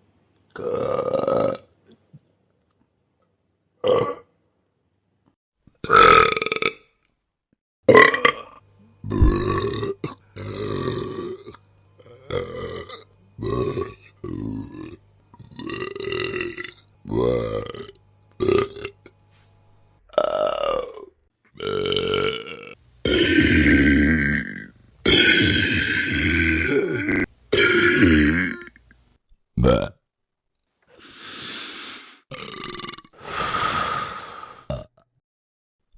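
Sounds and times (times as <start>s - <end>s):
person burping: 0.5s - 1.7s, 3.8s - 4.3s, 5.8s - 6.9s, 7.9s - 19.2s, 20.1s - 29.0s, 29.6s - 30.0s, 32.3s - 34.0s, 34.7s - 35.1s.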